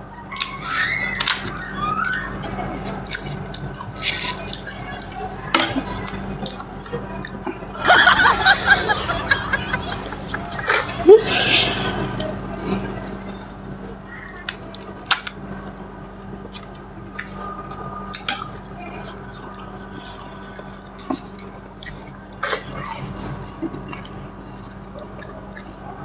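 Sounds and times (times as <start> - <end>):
food clicks and wet squishes: 0.3 - 7.7, 13.2 - 26.0.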